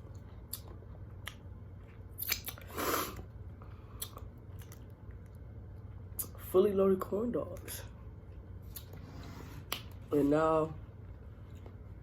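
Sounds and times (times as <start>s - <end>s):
chewing and mouth smacks: 0.0s - 3.3s, 3.9s - 6.4s, 8.6s - 9.0s, 9.6s - 10.0s.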